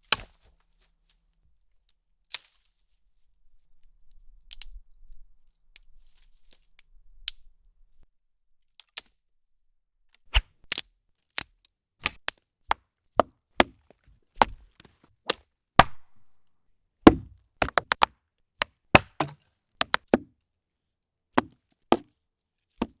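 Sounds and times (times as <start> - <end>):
twigs snapping: 10.4 - 10.8, 11.4 - 12.4, 13.6 - 16.4, 17.1 - 20.1.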